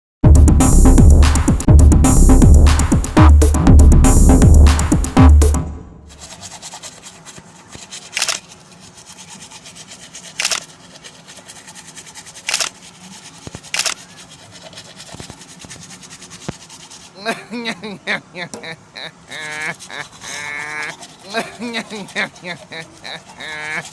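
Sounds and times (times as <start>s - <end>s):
faint steady background noise: 6.1s - 23.9s.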